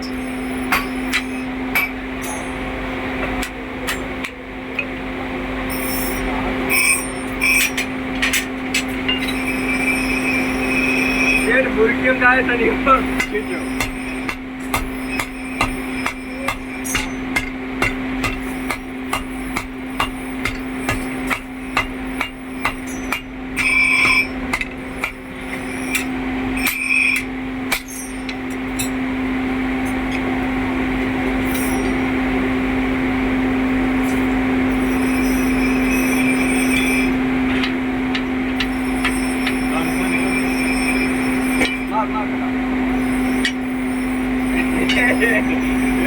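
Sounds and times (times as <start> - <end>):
hammer striking hot iron: 0.0 - 4.9, 5.8 - 11.7, 12.9 - 29.2, 31.3 - 32.2, 34.0 - 42.0, 43.0 - 46.0
loud machine noise: 0.0 - 46.0
machine hum: 0.0 - 46.0.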